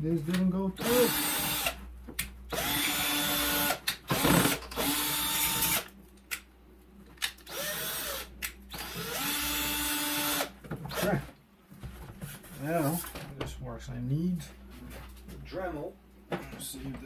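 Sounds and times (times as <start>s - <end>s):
power drill driving screws: 0.8s - 1.8s, 2.5s - 5.8s, 7.5s - 11.2s.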